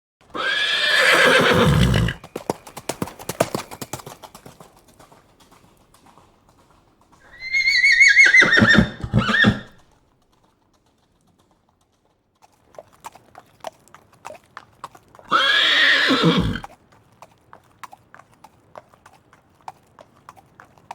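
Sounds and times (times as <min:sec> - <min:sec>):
horse whinnying: 0:00.2 - 0:02.2, 0:07.3 - 0:09.8, 0:15.3 - 0:16.7
galloping hoofbeats: 0:00.2 - 0:20.9
horse blowing call: 0:00.3 - 0:02.2, 0:07.3 - 0:09.8, 0:15.3 - 0:16.6.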